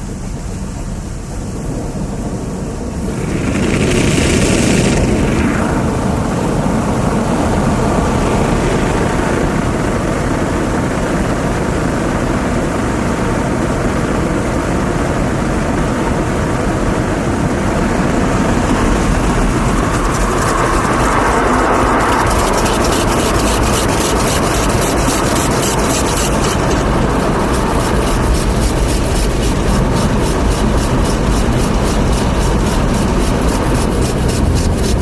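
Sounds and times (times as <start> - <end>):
whoosh with fine patter: 0.0 - 12.0, 14.4 - 35.0
car wash machinery rumbling: 16.6 - 35.0.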